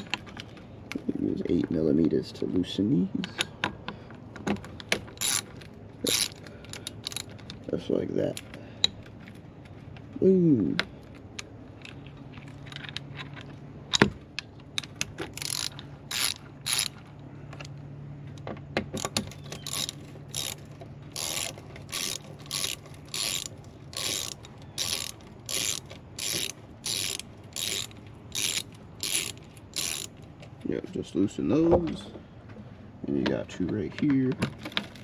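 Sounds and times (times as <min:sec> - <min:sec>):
hand ratchet clicking: 0:05.1 - 0:07.4, 0:15.2 - 0:17.0, 0:19.0 - 0:30.2.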